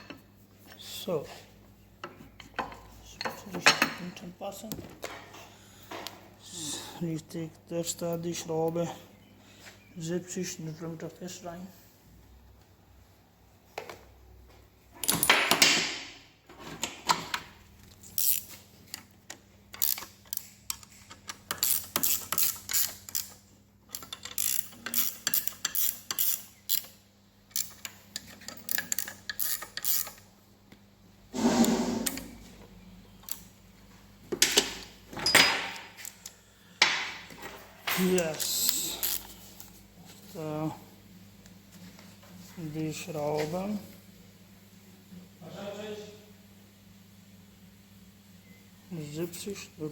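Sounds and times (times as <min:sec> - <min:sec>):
torque wrench ratcheting clicks: 0:18.0 - 0:18.6, 0:19.7 - 0:30.3, 0:38.2 - 0:39.3
metal tools clinking: 0:34.4 - 0:36.2.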